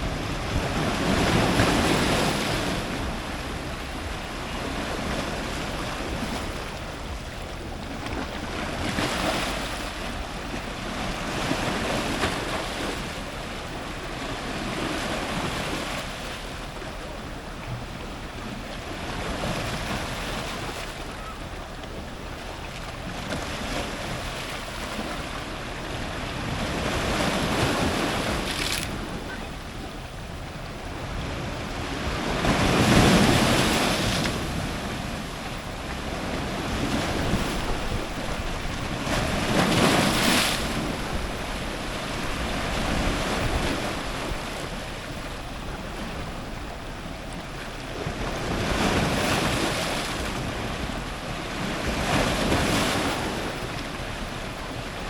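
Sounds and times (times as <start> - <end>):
surf breaking on rocks: 30.7 - 47.0.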